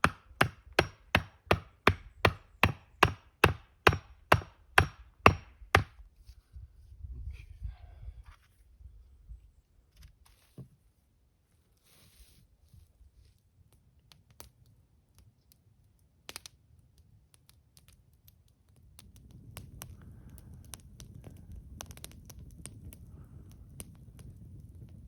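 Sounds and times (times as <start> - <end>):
campfire crackling and popping: 13.5 - 25.0.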